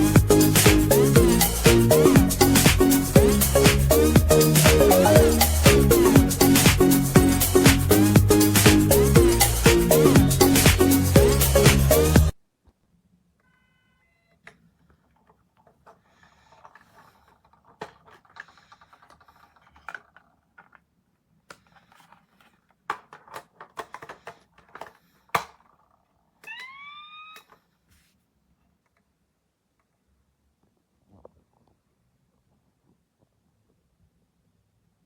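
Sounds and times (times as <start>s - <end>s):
plastic toy clicks and knocks: 14.4s - 27.6s
toy siren tone: 26.4s - 27.5s.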